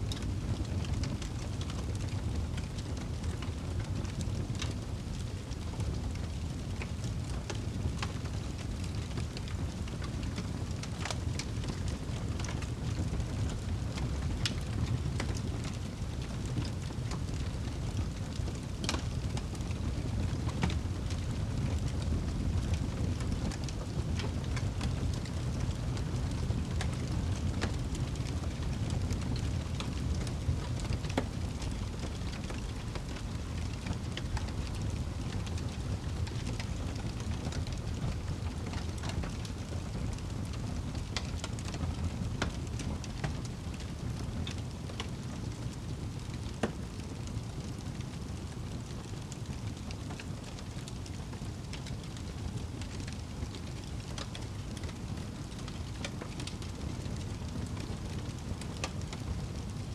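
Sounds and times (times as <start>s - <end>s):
wood fire crackling: 0.0s - 59.9s.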